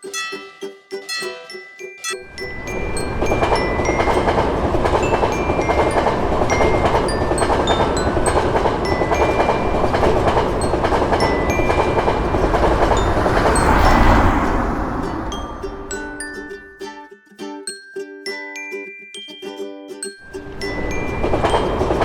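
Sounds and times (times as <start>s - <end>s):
glockenspiel-like music notes: 0.0s - 22.0s
train passing at speed: 2.2s - 16.8s, 20.3s - 22.0s.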